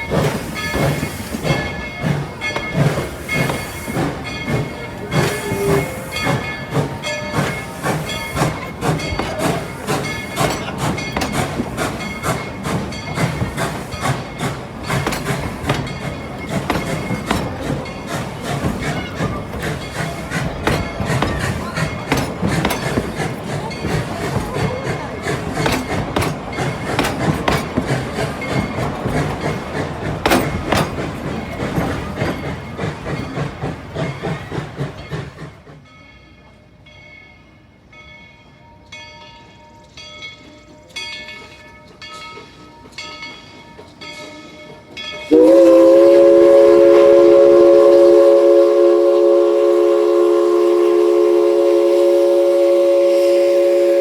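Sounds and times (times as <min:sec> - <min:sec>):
locomotive bell ringing: 0:00.0 - 0:34.2, 0:35.0 - 0:54.0
steam locomotive chuffing: 0:00.0 - 0:37.0, 0:40.8 - 0:54.0
steam whistle blast: 0:45.3 - 0:54.0.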